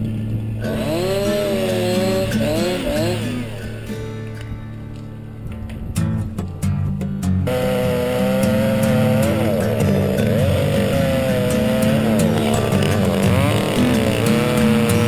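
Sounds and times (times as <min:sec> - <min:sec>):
chainsaw cutting: 0:00.6 - 0:04.4, 0:07.4 - 0:15.0.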